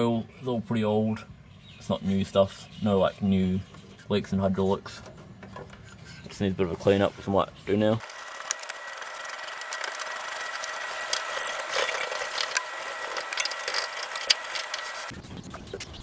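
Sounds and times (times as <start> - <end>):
scratchy scrubbing and rubbing: 8.0 - 15.1
small clicks: 8.0 - 15.1.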